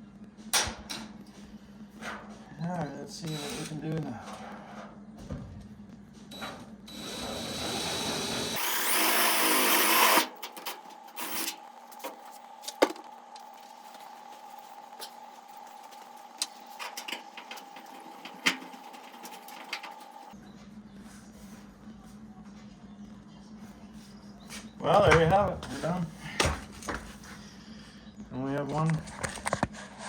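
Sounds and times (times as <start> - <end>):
electric drill whining into metal: 3.2 - 4.0, 6.3 - 12.4, 15.8 - 20.3.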